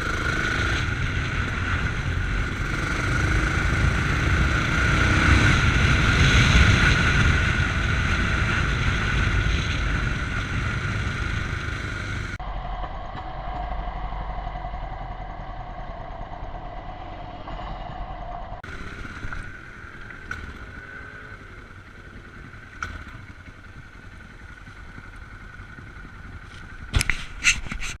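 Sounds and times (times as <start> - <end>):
wind noise: 0.0 - 19.7
motorcycle engine: 0.0 - 28.0.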